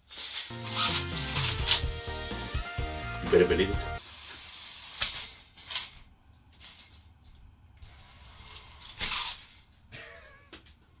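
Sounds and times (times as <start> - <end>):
tape measure rattling and scraping: 0.0 - 1.9, 4.2 - 9.7.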